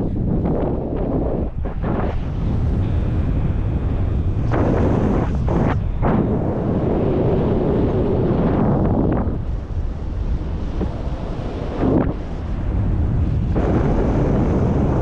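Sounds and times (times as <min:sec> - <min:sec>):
wind buffeting microphone: 0:00.0 - 0:15.0.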